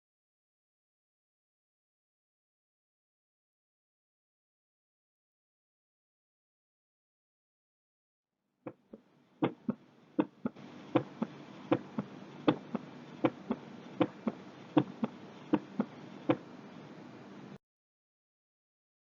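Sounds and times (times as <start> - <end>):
faint steady hiss: 8.7 - 17.6
heartbeat through stethoscope: 9.4 - 16.5.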